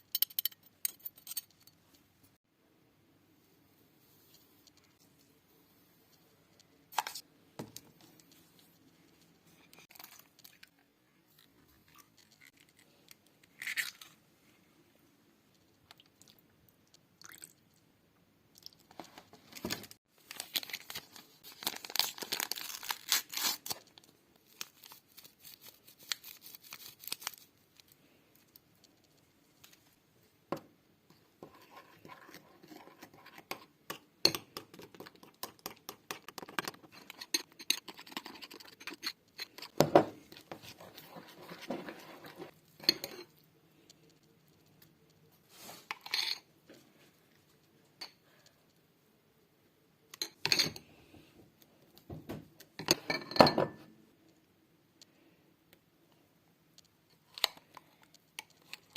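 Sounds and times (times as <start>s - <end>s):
packaging crinkling and tearing: 20.2s - 27.5s.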